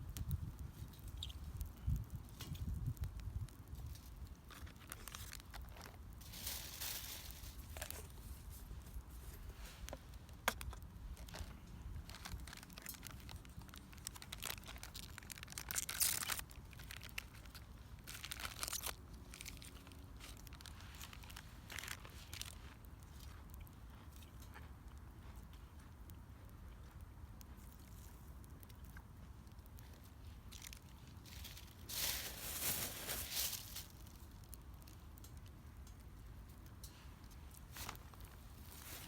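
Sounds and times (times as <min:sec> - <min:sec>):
crumpling rustling noise: 0:00.0 - 0:25.9, 0:26.8 - 0:39.0
wood fire crackling: 0:00.0 - 0:39.0.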